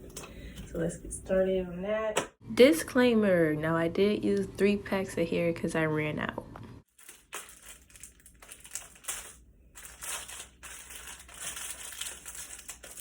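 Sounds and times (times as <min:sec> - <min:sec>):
plastic packaging crinkling: 0:06.9 - 0:13.0.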